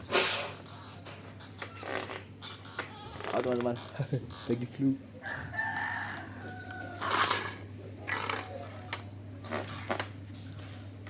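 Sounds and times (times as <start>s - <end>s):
rooster crowing: 5.2s - 7.4s
loud rustling scrape: 7.0s - 7.6s.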